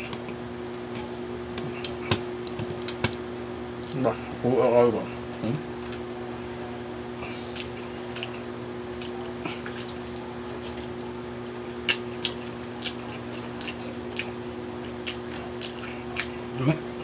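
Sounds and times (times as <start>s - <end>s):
steady low hum: 0.0s - 17.0s
wet chewing and smacking: 7.4s - 16.4s.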